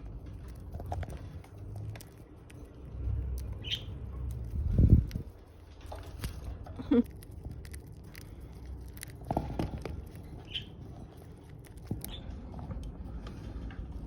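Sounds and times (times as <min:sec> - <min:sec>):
budgerigars clicking and scratching: 0:00.4 - 0:05.4, 0:07.1 - 0:12.4
high bird chirps: 0:03.5 - 0:04.0, 0:10.4 - 0:10.8.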